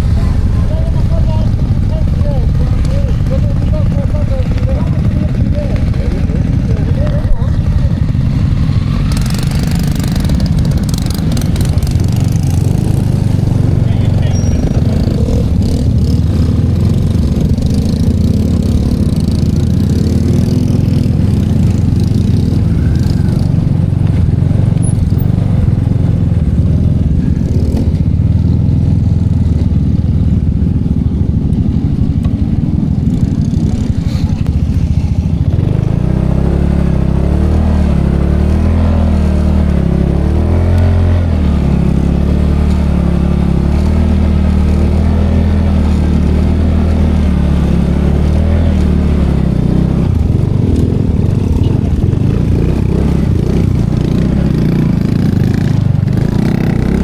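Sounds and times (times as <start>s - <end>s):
rushing noise: 0.0s - 24.4s
small motorcycle engine: 0.0s - 57.0s.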